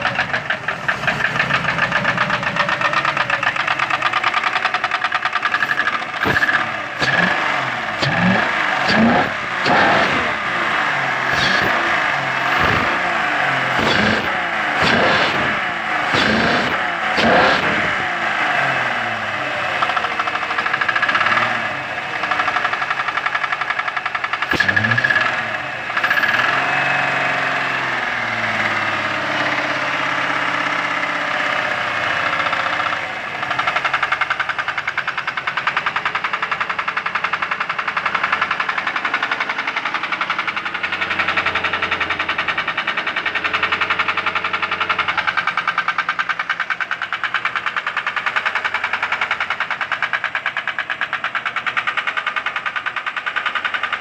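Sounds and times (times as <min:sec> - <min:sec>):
fast even engine knock: 0:00.0 - 0:18.5, 0:19.8 - 0:26.6, 0:31.8 - 0:54.0
car engine running: 0:00.0 - 0:30.3.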